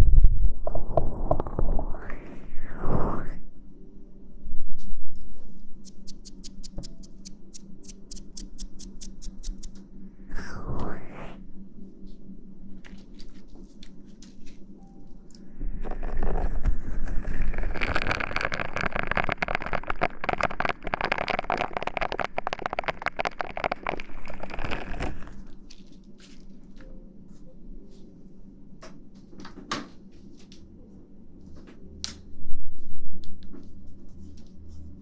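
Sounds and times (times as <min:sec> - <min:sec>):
tiny clicks: 0:05.8 - 0:09.8
rustling and crinkling: 0:12.7 - 0:28.2.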